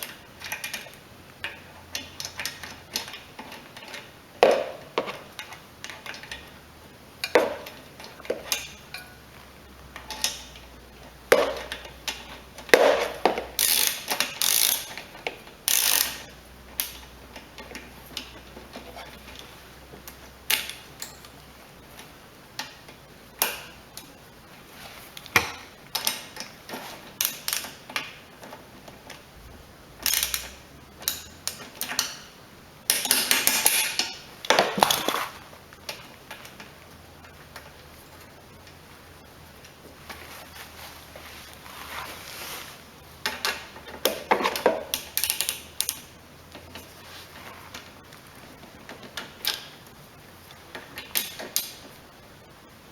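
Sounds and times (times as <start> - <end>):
hand tools clicking on metal: 11.3 - 19.5, 20.1 - 21.4, 30.0 - 32.3, 43.2 - 46.9.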